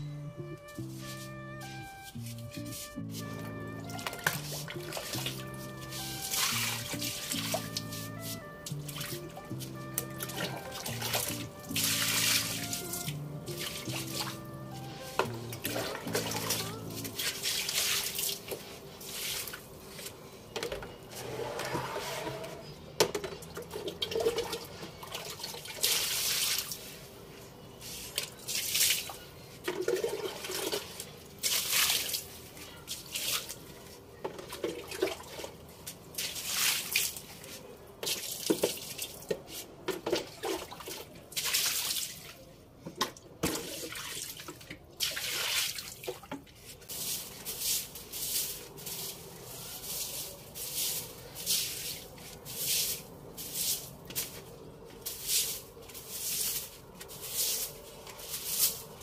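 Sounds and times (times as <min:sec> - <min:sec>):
wet scrubbing: 0:00.9 - 0:14.4
water splashing: 0:04.0 - 0:14.4, 0:15.5 - 0:19.6.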